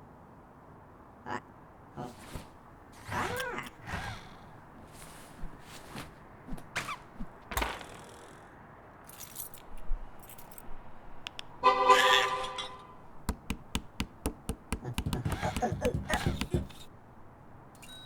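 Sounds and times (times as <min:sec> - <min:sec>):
run of sharp clicks: 0:11.3 - 0:11.6, 0:13.2 - 0:16.9.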